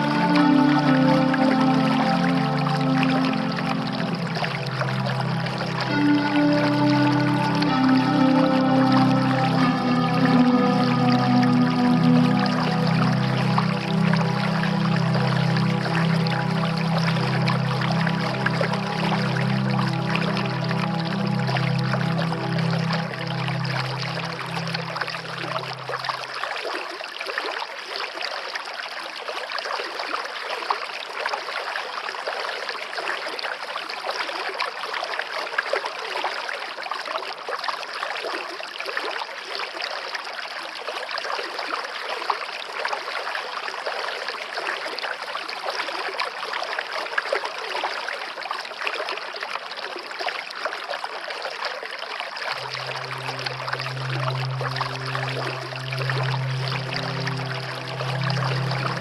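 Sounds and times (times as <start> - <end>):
low held music chord: 0.0 - 26.4, 52.5 - 59.0
stream water flowing: 0.0 - 59.0.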